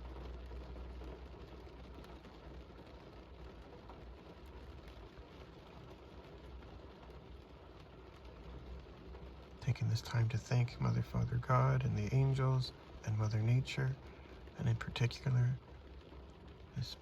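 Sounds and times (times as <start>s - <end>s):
raindrop ticks: 0.0s - 17.0s
steady rain hiss: 0.0s - 17.0s.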